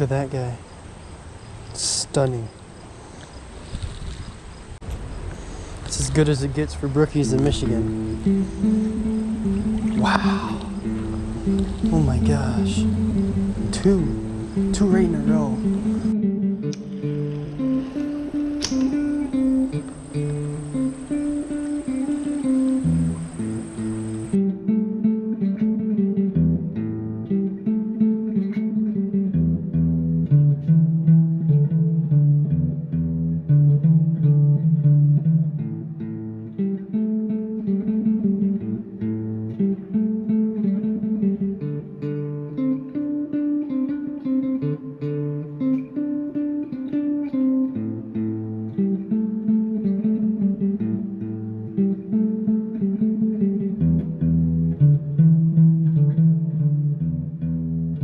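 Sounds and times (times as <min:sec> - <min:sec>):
plucked guitar: 0:06.9 - 0:58.0
bass line: 0:07.4 - 0:16.2.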